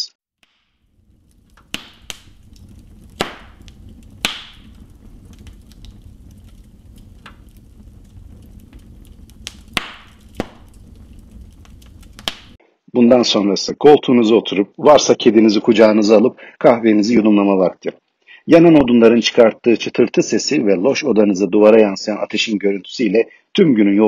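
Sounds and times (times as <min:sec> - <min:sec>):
fire crackles and pops: 0:00.4 - 0:12.6
fire rumbling: 0:00.4 - 0:12.6.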